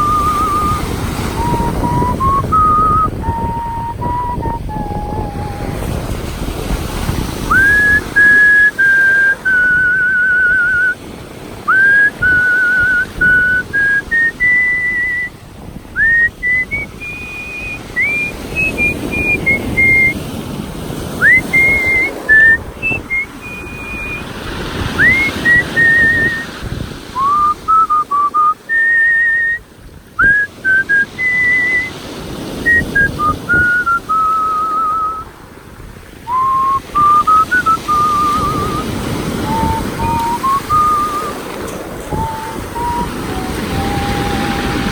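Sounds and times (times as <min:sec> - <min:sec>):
man whistling a slow melody: 0:00.0 - 0:06.1, 0:07.4 - 0:11.0, 0:11.7 - 0:15.4, 0:16.0 - 0:20.2, 0:21.2 - 0:35.4, 0:36.2 - 0:44.9.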